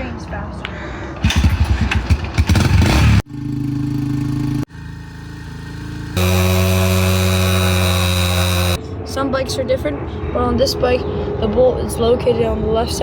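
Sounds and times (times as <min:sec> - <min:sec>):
small engine idling: 0:03.4 - 0:08.8.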